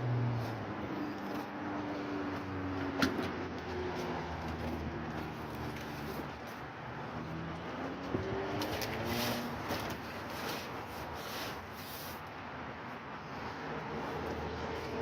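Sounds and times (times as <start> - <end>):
vehicle engine and road noise: 0.0 - 15.0.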